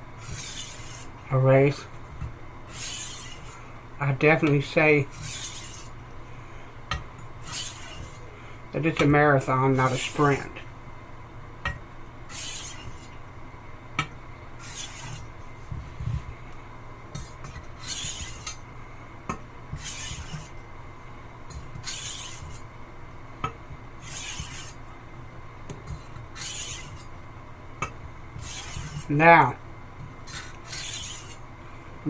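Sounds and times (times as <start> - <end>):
knife scraping on whetstone: 0.2 - 1.1, 2.7 - 3.6, 5.0 - 6.0, 7.4 - 8.2, 9.7 - 10.4, 12.3 - 13.2, 14.6 - 15.3, 17.1 - 18.6, 19.7 - 20.6, 21.5 - 22.7, 24.0 - 24.8, 25.8 - 27.1, 28.4 - 29.1, 30.2 - 31.4.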